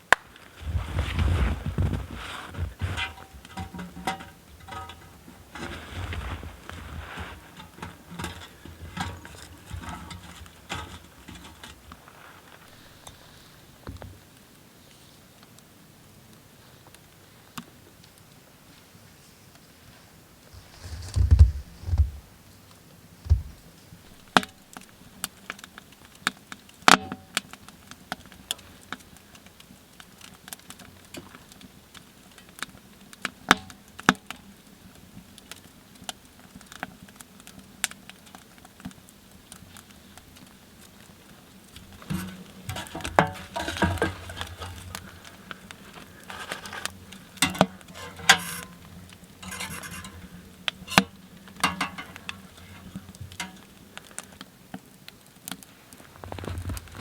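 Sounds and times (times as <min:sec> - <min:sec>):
clattering and rustling: 0:00.4 - 0:14.2, 0:20.6 - 0:22.3, 0:41.7 - 0:53.8
sharp clicks and knocks: 0:46.6 - 0:53.7.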